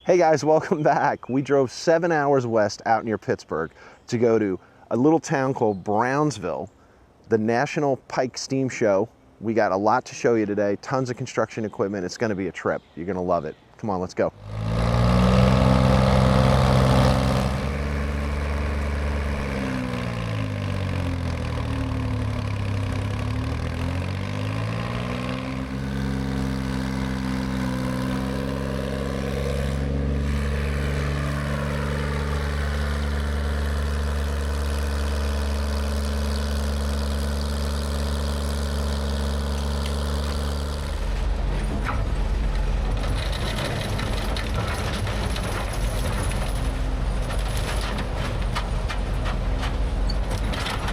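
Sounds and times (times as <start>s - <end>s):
engine running low hum: 14.3s - 50.9s.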